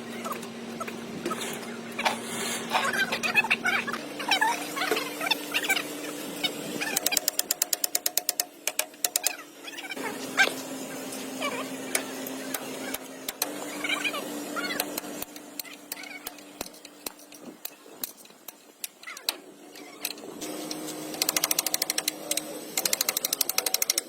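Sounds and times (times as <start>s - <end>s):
machine hum: 0.0s - 17.4s
power tool hammering: 6.8s - 9.4s, 10.1s - 13.8s, 20.4s - 24.0s.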